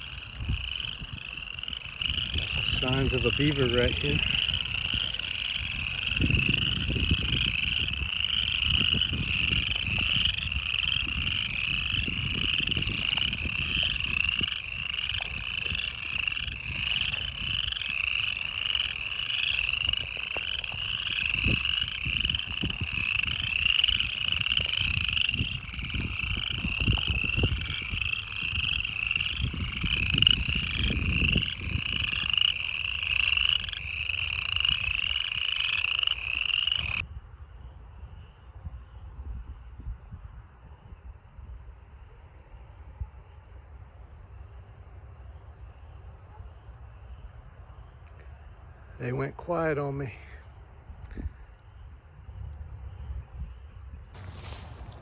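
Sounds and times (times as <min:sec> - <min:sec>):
chorus of frogs calling: 0:00.0 - 0:37.1.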